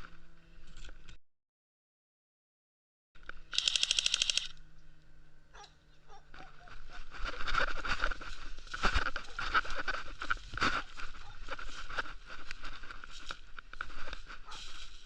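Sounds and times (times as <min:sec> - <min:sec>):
rustling and crunching movement: 0:05.5 - 0:15.0.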